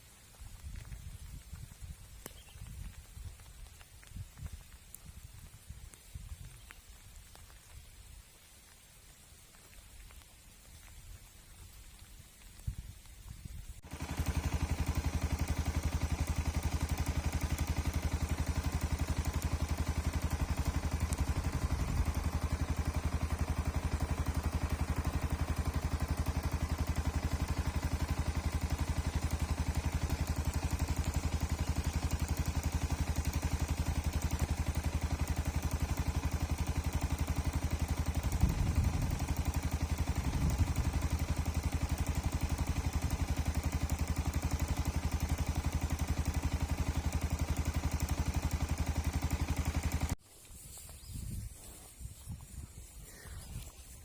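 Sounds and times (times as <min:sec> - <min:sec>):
small motorcycle engine running: 0:00.3 - 0:05.6, 0:13.8 - 0:50.2.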